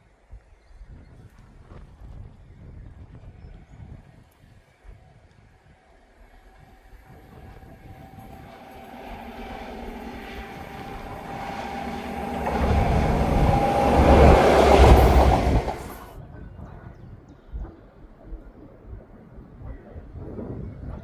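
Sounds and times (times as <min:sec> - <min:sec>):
train passing at speed: 0:06.9 - 0:16.2.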